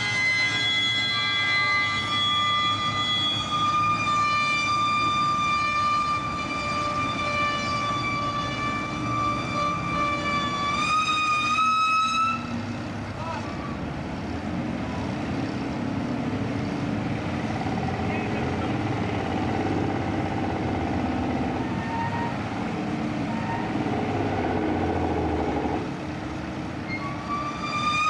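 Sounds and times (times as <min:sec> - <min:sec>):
engine rumble: 0:12.4 - 0:27.4
heavy machinery whining: 0:16.6 - 0:28.0.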